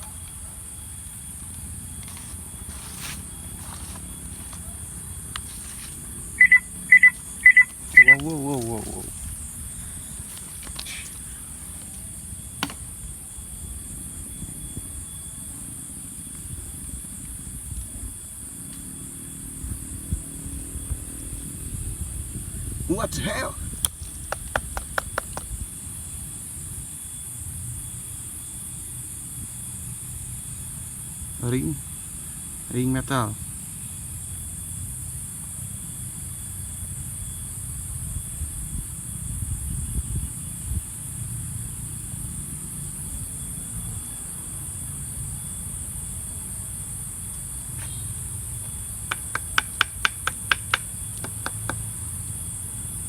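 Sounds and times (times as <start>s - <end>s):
crickets chirping: 0.0s - 53.0s
sharp pitched chirps: 6.4s - 9.0s
light taps: 23.8s - 25.5s.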